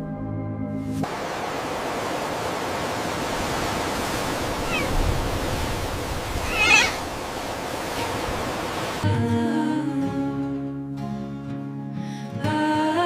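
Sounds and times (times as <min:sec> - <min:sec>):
steady rushing noise: 0:01.0 - 0:09.0
ragged animal call: 0:04.3 - 0:07.2
faint short call: 0:04.5 - 0:05.1.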